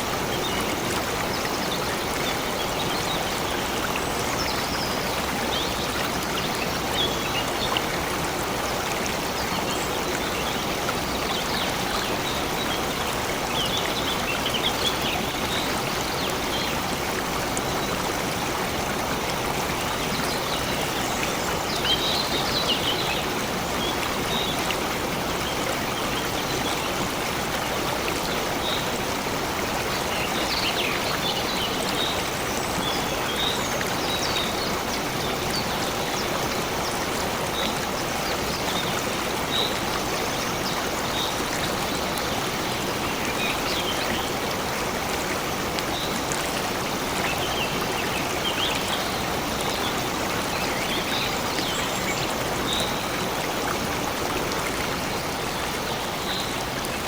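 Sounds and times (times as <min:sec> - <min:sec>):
stream water flowing: 0:00.0 - 0:57.0.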